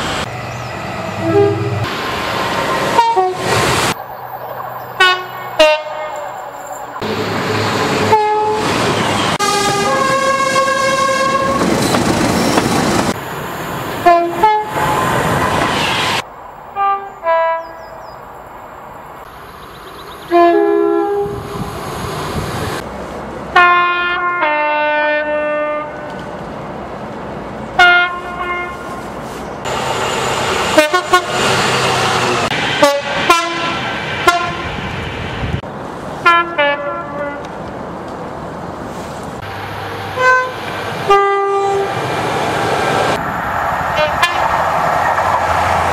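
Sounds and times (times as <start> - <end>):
train passing at speed: 0.0 - 45.9
two-tone train horns: 1.2 - 1.9, 2.9 - 3.6, 5.0 - 6.3, 7.9 - 11.7, 14.0 - 14.8, 16.8 - 17.9, 20.3 - 21.7, 23.5 - 26.3, 27.8 - 29.0, 30.7 - 31.6, 32.8 - 34.8, 36.2 - 37.5, 40.1 - 42.0, 43.9 - 44.6.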